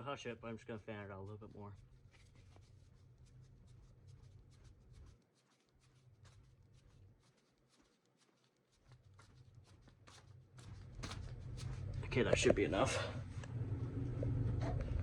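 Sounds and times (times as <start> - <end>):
low hum: 10.6 - 15.0.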